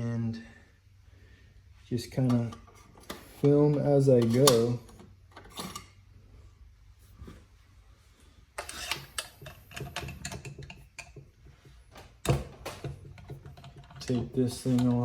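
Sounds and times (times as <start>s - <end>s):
hand tools clicking and tapping: 8.6s - 15.0s.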